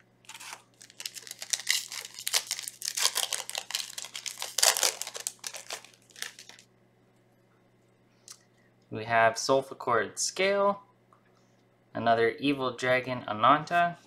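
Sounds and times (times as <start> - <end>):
foil wrapper tearing and crinkling: 0.2 - 6.6.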